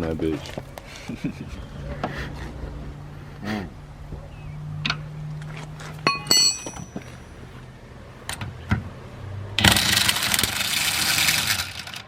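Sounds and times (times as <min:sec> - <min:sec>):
ringing metal clanks: 0:06.0 - 0:07.2.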